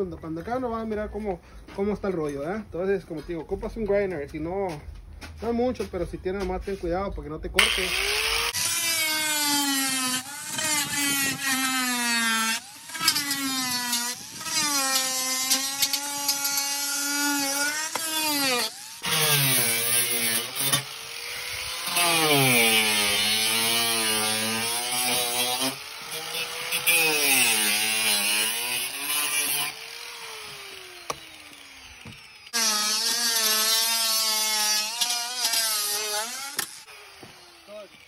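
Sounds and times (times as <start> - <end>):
angle grinder cutting metal: 7.6 - 38.0.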